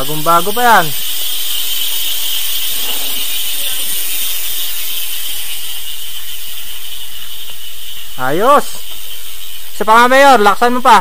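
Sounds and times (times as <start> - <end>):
bicycle hub freewheel buzzing: 0.0 - 11.0.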